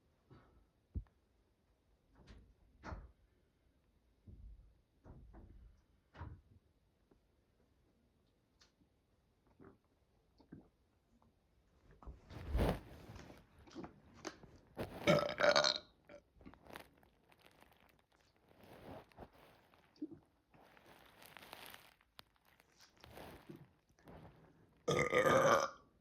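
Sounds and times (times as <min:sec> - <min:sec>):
person burping: 0:15.0 - 0:15.9, 0:24.9 - 0:25.8.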